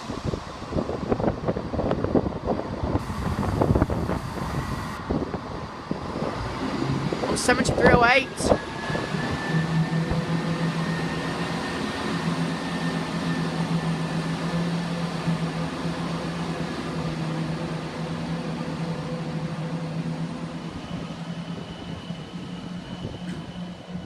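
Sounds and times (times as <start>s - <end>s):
train diesel engine droning: 0.0s - 24.0s
faint high whine: 3.0s - 5.0s.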